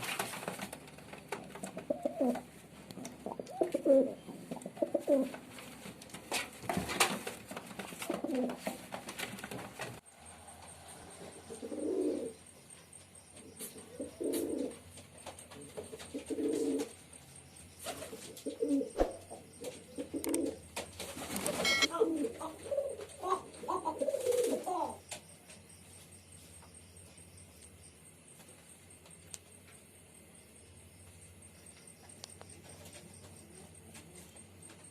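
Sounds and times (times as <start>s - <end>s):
pigeon cooing: 0.0s - 5.8s, 7.9s - 8.9s, 11.0s - 12.4s, 13.5s - 14.9s, 15.6s - 17.0s, 17.8s - 25.0s.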